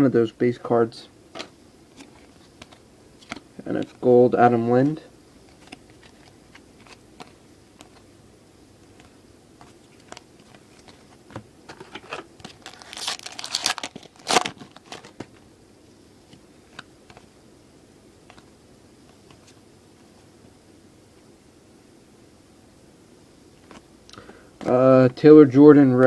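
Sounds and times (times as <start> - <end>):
foil wrapper crinkling and tearing: 12.5 - 15.1.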